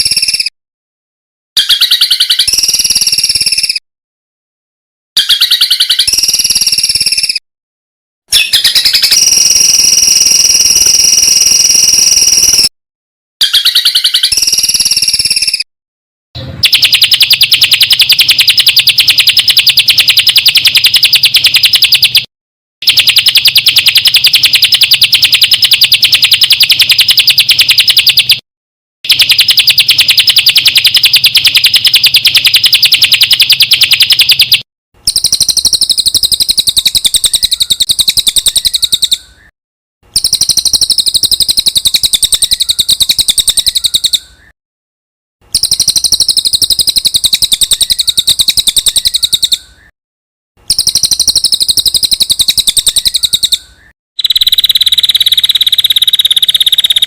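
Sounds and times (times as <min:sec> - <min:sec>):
songbird fast trill: 0:00.0 - 0:00.5, 0:01.6 - 0:03.8, 0:05.2 - 0:07.4, 0:08.3 - 0:12.7, 0:13.4 - 0:15.7, 0:16.6 - 0:28.4, 0:29.1 - 0:39.5, 0:40.1 - 0:44.5, 0:45.5 - 0:49.9, 0:50.6 - 0:57.0
bird chattering: 0:35.1 - 0:39.5, 0:40.2 - 0:44.5, 0:45.5 - 0:49.9, 0:50.7 - 0:57.0.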